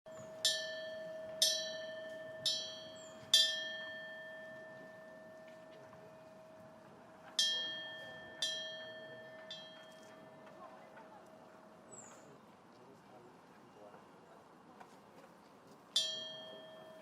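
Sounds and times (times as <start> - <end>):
metal wind bell strikes: 0.1 - 10.7, 16.0 - 17.0
low ringing bell tone: 0.1 - 11.9, 16.0 - 17.0.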